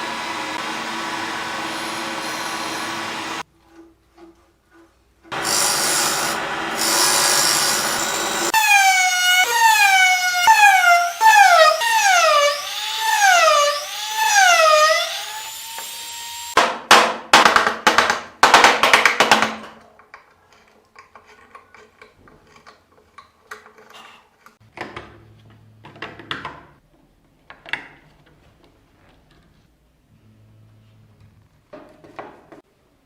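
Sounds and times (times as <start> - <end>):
siren-like wail: 8.5 - 13.7.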